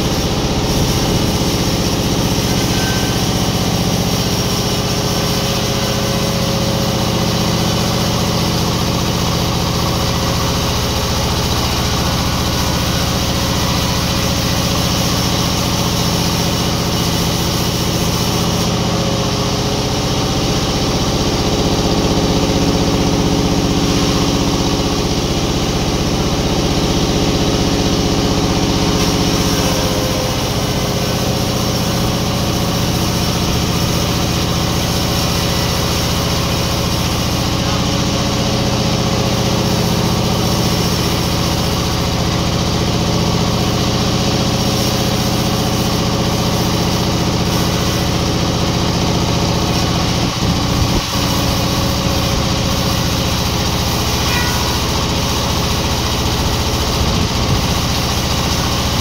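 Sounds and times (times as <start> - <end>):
sawmill machinery humming: 0.0 - 59.0.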